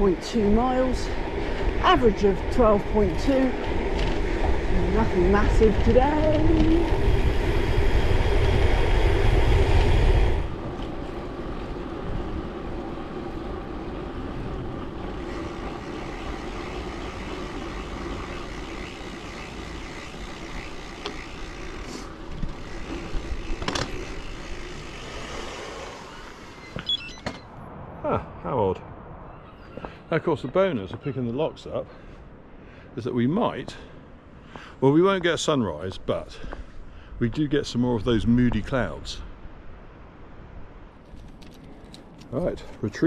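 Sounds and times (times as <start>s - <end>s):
wind rushing over microphone: 0.0s - 30.4s
road and traffic rumble: 0.0s - 43.0s.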